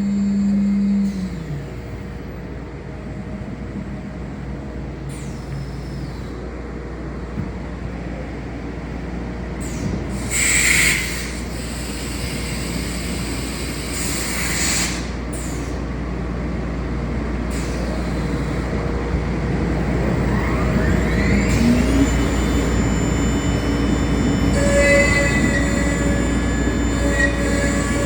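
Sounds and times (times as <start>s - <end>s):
motor whine rising: 0.0s - 2.5s, 17.7s - 28.0s
workshop machinery humming: 0.0s - 28.0s.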